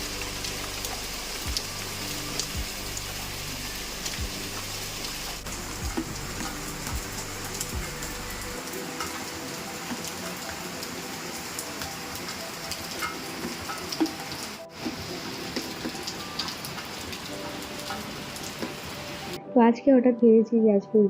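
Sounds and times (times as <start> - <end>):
raindrops tapping on surfaces: 0.0 - 19.4
steady rain falling: 0.0 - 19.4.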